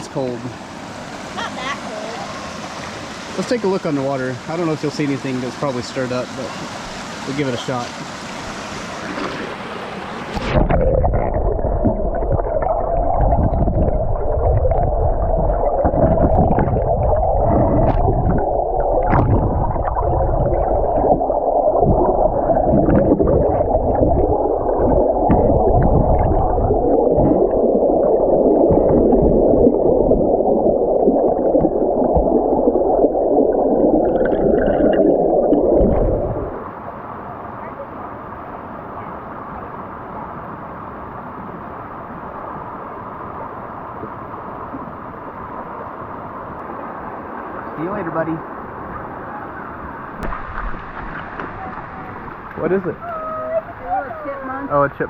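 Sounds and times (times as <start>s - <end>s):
muffled underwater creek churning: 0.0s - 55.0s
stream flowing: 0.0s - 55.0s.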